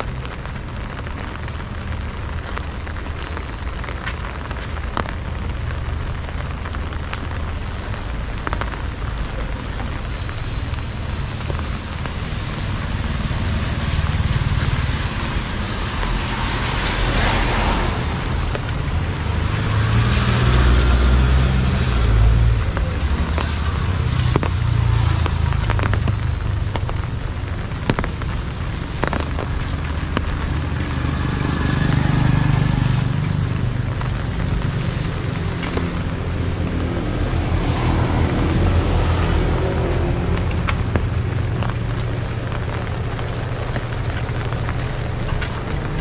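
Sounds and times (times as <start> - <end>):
vehicles passing: 0.0 - 46.0.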